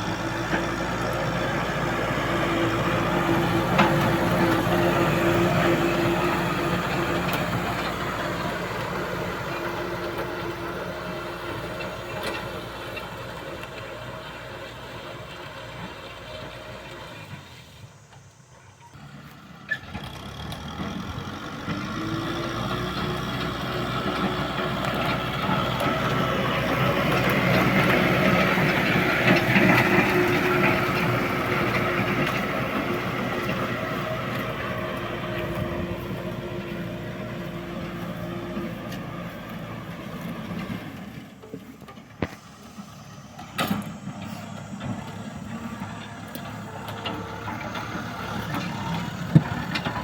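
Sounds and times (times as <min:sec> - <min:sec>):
tractor diesel engine running: 0:00.0 - 0:50.0.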